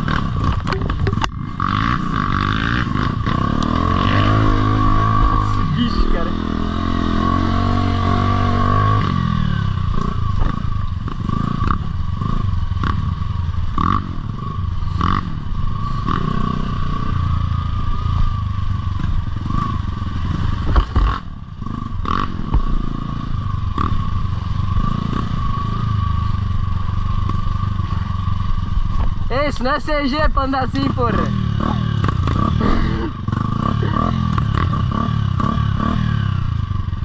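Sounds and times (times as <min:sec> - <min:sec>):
motorcycle engine running: 0:00.0 - 0:37.0
knocks and rattles: 0:00.4 - 0:01.3.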